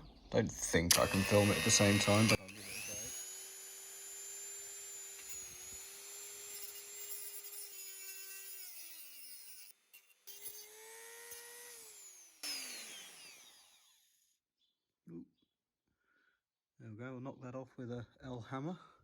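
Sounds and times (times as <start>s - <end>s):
harsh grinding burst: 0.6s - 14.0s
rotary tool whining: 0.6s - 14.2s.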